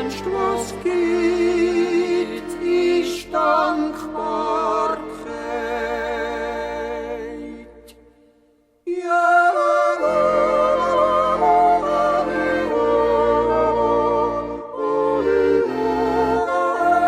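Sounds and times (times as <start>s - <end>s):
yodel song: 0.0s - 17.0s.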